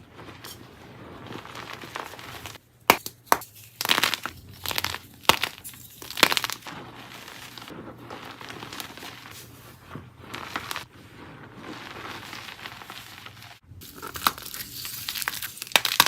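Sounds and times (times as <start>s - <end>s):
chalk blocks being crushed: 1.4s - 9.4s, 11.7s - 16.0s.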